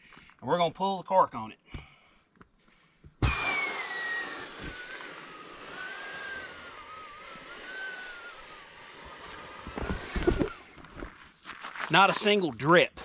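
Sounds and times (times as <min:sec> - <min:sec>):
air hissing from mattress valve: 0:02.7 - 0:11.1.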